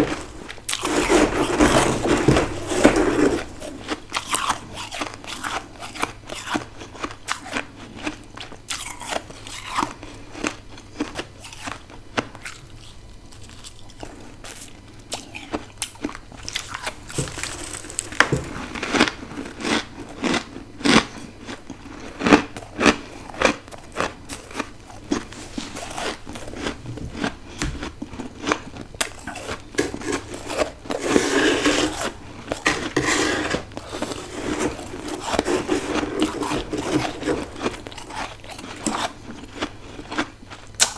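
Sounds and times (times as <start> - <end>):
person crunching ice: 0.0 - 4.5, 16.5 - 24.1, 28.4 - 40.2.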